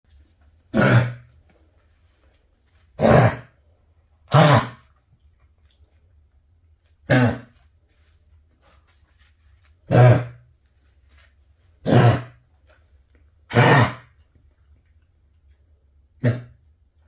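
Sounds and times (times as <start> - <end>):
dog coughing: 0.7 - 1.3, 3.0 - 3.5, 4.3 - 4.8, 7.1 - 7.5, 11.8 - 12.4, 13.5 - 14.2, 16.2 - 16.6.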